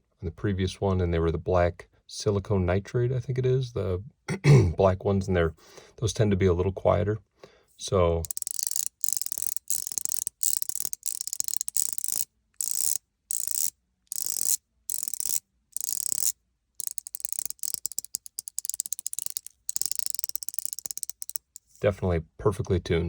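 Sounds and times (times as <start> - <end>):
fidget ring clicking: 8.2 - 21.8.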